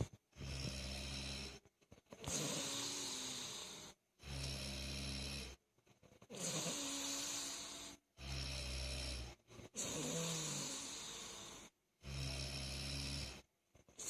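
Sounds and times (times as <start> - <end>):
person snoring: 0.0 - 1.6, 2.2 - 14.0.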